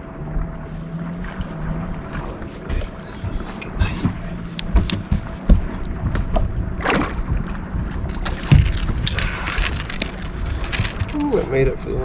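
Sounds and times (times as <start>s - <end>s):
gear knocking and clattering: 8.1s - 11.5s.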